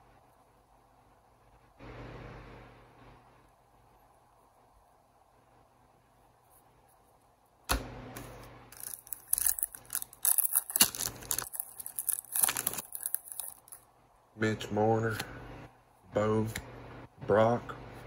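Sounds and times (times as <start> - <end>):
wrapper tearing: 8.7 - 13.8
wrapper crackling and rustling: 8.7 - 13.9.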